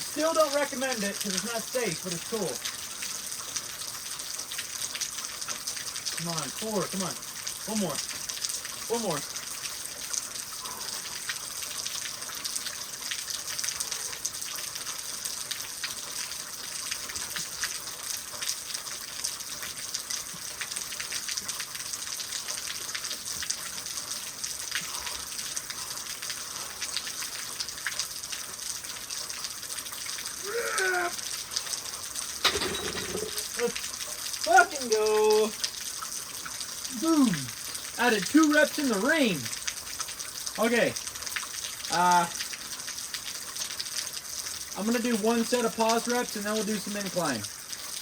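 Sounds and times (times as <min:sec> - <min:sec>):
steady rain pattering: 0:00.0 - 0:48.0
person straining vocal sound: 0:30.4 - 0:31.3, 0:36.9 - 0:37.6.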